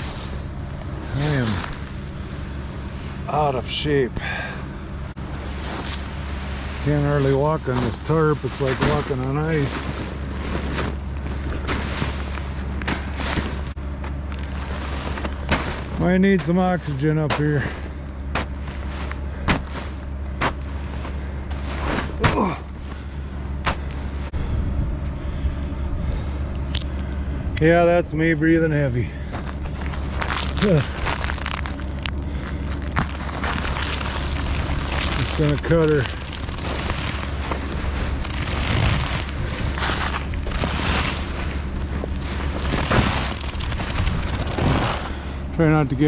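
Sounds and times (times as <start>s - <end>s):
knocks and crunches on frozen tarp: 0.0s - 4.5s, 5.3s - 24.3s, 29.3s - 45.5s
steady low hum: 0.0s - 46.0s
man breathing heavily: 4.1s - 5.1s, 22.3s - 27.5s, 32.1s - 33.0s
wind buffeting microphone: 24.3s - 26.3s.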